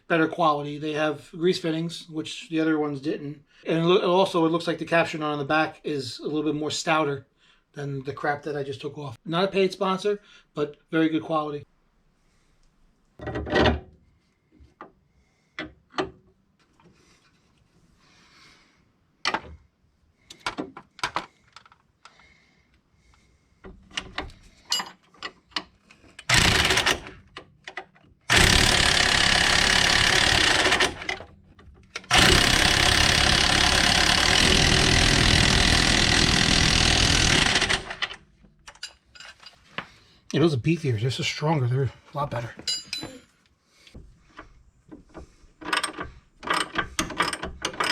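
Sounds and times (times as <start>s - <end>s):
tools and metal parts clinking: 23.8s - 26.4s, 38.0s - 39.7s, 42.6s - 43.3s, 45.6s - 47.9s
impact wrench hammering: 26.3s - 27.2s, 28.3s - 31.3s, 32.0s - 38.2s.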